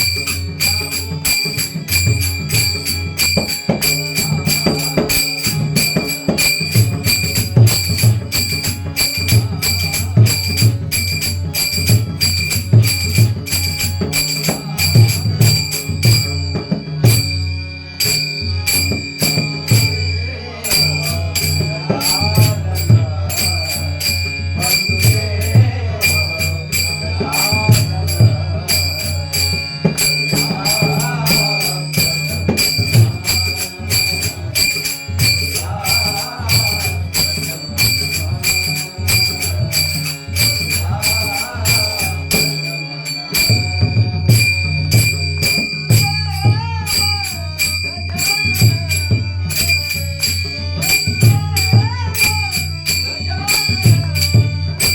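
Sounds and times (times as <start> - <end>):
hand cymbals jingling: 0.0 - 54.9
person singing: 19.2 - 44.5.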